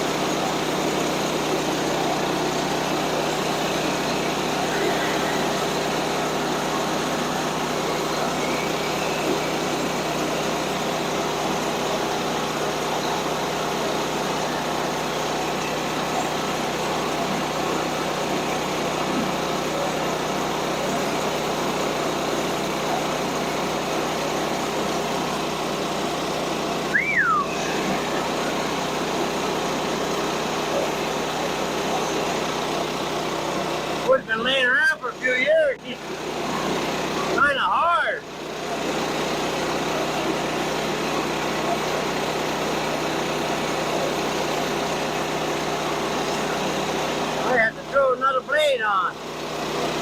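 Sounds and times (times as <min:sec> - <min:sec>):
sawmill engine running: 0:00.0 - 0:50.0.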